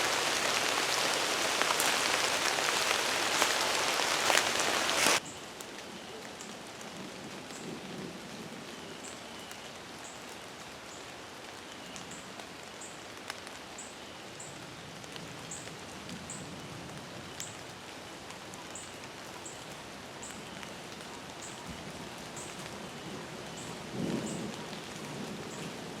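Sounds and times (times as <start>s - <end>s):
low rustle: 0.0s - 5.2s
rain-like outdoor hiss: 0.0s - 26.0s.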